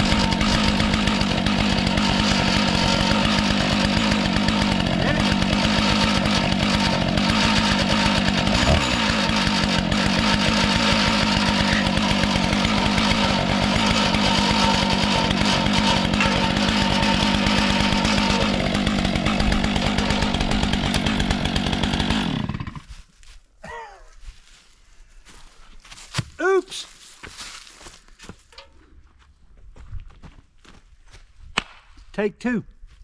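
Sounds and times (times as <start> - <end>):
chainsaw cutting wood at full throttle: 0.0 - 22.9.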